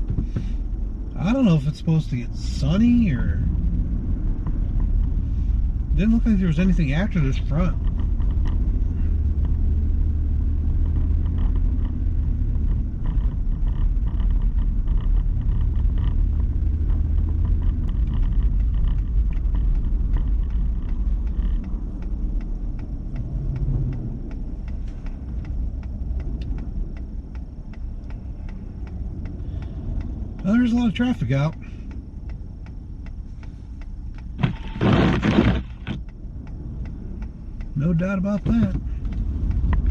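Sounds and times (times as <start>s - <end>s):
road and engine rumble in cabin: 0.0s - 39.9s
faint ticks: 10.7s - 34.4s, 35.8s - 39.9s.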